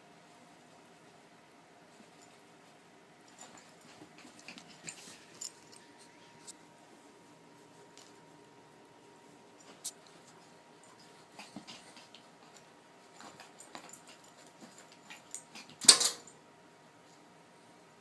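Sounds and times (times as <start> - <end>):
faint clicks and scuffles: 1.9 - 8.4, 9.0 - 15.9.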